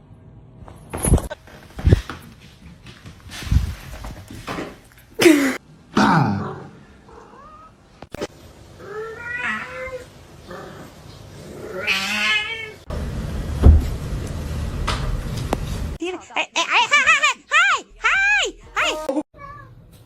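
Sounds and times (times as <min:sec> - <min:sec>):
cats meowing and yowling: 0:08.8 - 0:10.1, 0:11.7 - 0:12.8
loud thump: 0:13.6 - 0:14.0.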